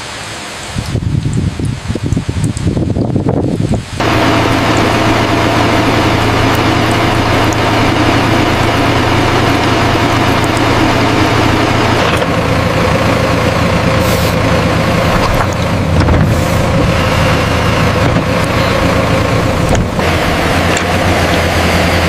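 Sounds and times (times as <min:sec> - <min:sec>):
diesel engine running: 0:03.9 - 0:22.0
brief hiss: 0:14.0 - 0:14.4.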